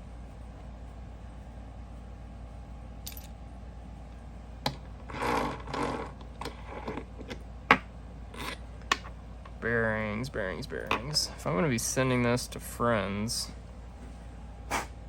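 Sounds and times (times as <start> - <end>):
metal parts clinking and rattling: 3.0 - 3.4.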